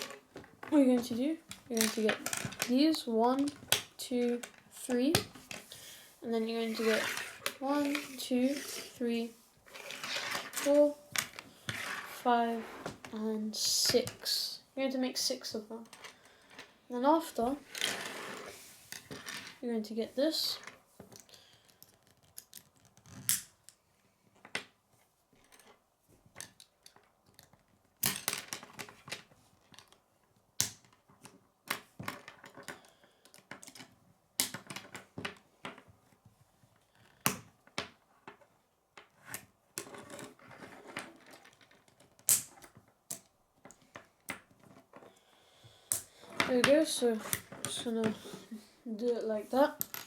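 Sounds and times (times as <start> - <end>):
plastic pieces clicking together: 21.1 - 23.8, 41.0 - 44.8.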